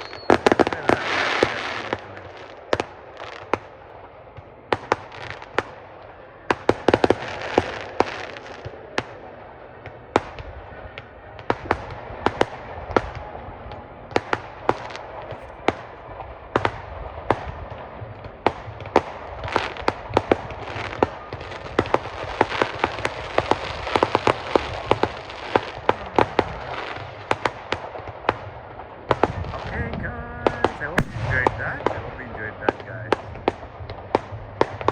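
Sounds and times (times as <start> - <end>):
fireworks banging: 0.0 - 34.9.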